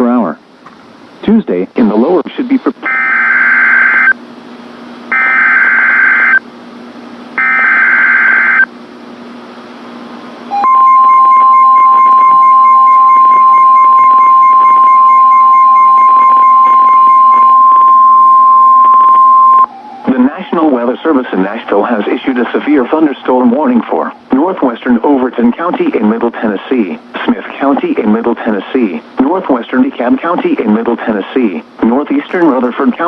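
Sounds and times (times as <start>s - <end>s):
long steady alert tone: 5.1s - 6.4s, 7.4s - 8.7s, 10.5s - 24.1s.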